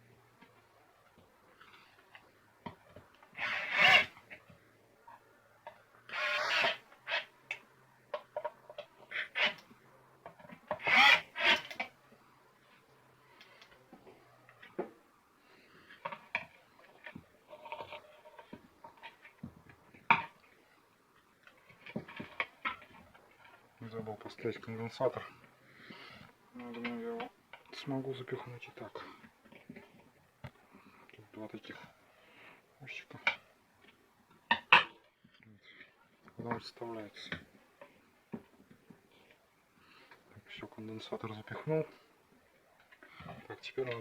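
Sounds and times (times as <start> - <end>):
parts rubbing and scraping: 1.6 - 4.5, 6.1 - 7.4, 10.3 - 12.0, 15.8 - 20.5.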